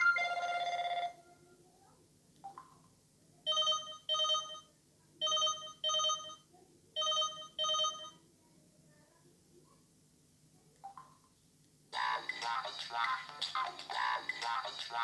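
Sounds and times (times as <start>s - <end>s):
phone ringtone double ring: 0.0s - 1.2s, 7.0s - 8.2s.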